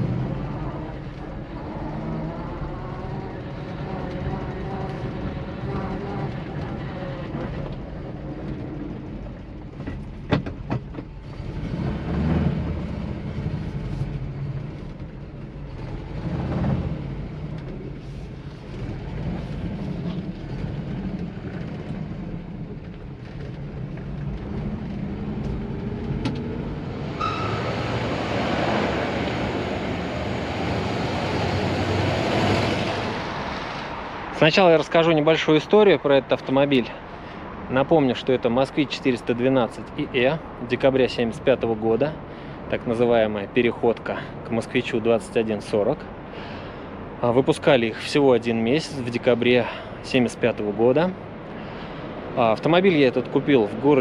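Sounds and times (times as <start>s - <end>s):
car engine from inside cabin: 0.0s - 34.0s
broad rushing noise: 26.6s - 35.6s.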